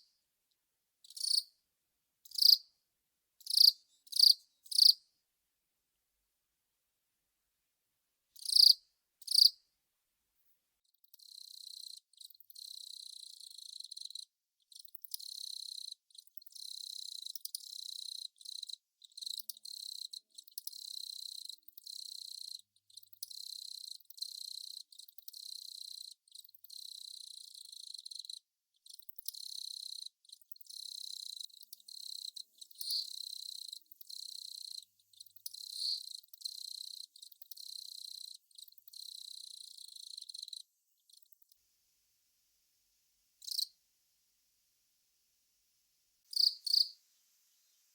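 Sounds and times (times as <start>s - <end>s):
cricket chirps: 1.0s - 1.6s, 2.2s - 2.8s, 3.4s - 5.1s, 8.4s - 9.6s, 10.8s - 41.6s, 43.4s - 43.8s, 46.2s - 47.0s.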